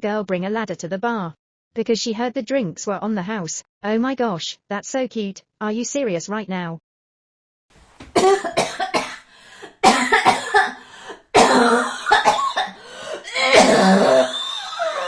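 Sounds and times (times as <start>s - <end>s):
person coughing: 8.1s - 15.0s.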